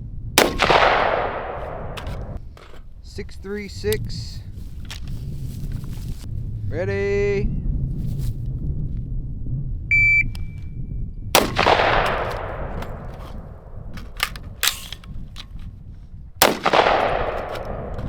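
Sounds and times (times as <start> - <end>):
rifle shots echoing: 0.4 - 2.4, 11.4 - 15.0, 16.4 - 18.0
shot timer beep: 9.9 - 10.7
metallic magazine change clicks: 14.0 - 15.5.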